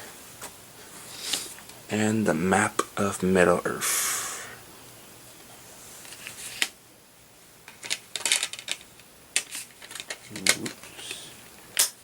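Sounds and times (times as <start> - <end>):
paper inserts rustling: 6.0 - 6.8, 7.7 - 11.9.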